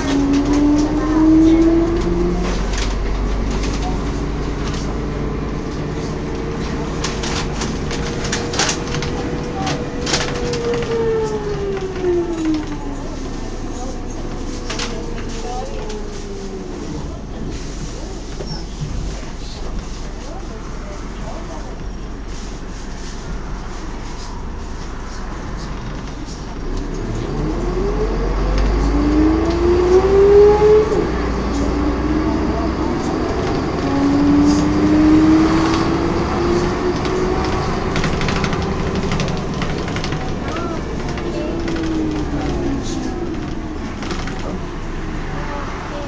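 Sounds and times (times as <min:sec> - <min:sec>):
bus gearbox whining: 0:00.0 - 0:13.0, 0:31.7 - 0:44.7
sharp clicks and rattles: 0:00.0 - 0:16.4, 0:31.5 - 0:44.8
low drone of running bus: 0:00.0 - 0:46.0.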